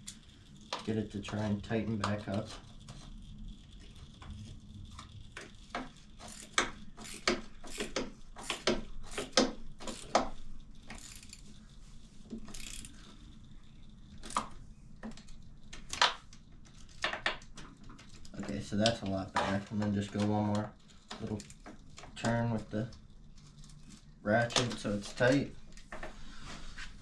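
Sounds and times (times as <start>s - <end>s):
ratchet clicking: 0.0s - 11.7s, 12.4s - 16.0s, 18.1s - 23.7s.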